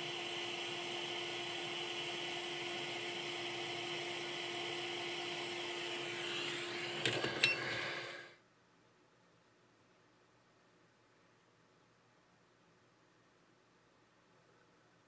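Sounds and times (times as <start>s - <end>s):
hot air station hissing: 0.0s - 8.4s.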